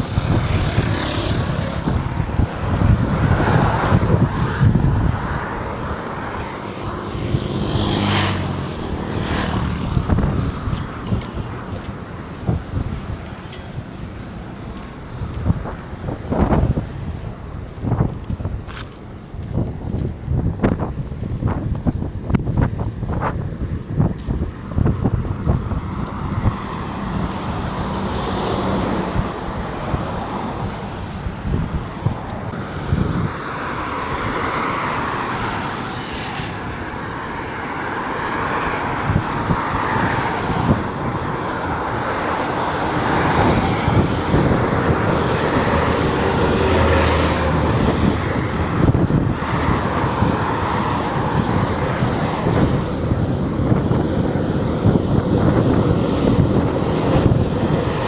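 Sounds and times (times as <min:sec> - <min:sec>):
highway traffic passing: 0:00.0 - 0:58.0
wind buffeting microphone: 0:00.0 - 0:58.0.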